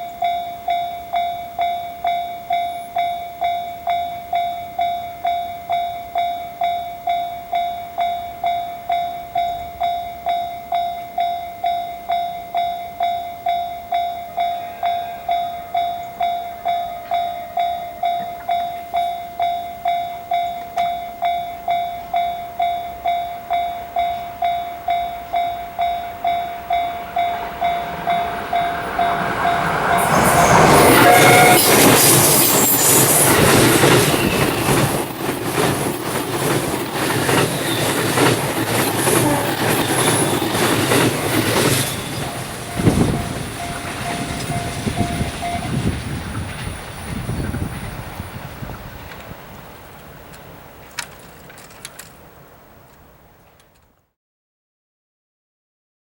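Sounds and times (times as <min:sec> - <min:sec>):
level crossing bell ringing: 0:00.0 - 0:35.5, 0:39.4 - 0:46.8
train passing at speed: 0:00.0 - 0:52.7.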